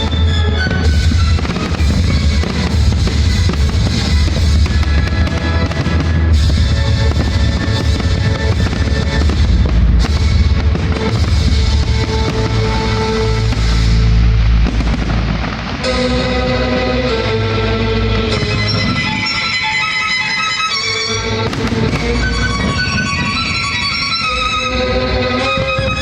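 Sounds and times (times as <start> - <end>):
loud music with drums: 0.0 - 16.1, 21.4 - 24.2
firework bursts and booms: 0.0 - 26.0.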